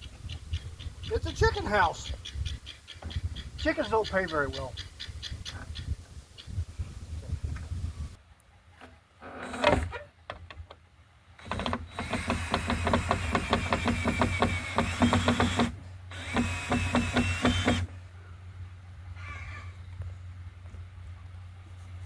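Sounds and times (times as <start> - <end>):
power drill clicking: 11.4 - 17.9.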